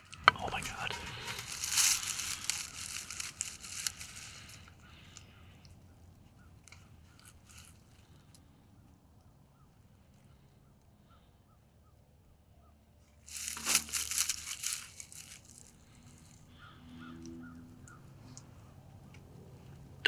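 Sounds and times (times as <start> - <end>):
loud rustling crinkling noise: 0.0 - 5.5, 6.5 - 8.2, 13.2 - 16.6.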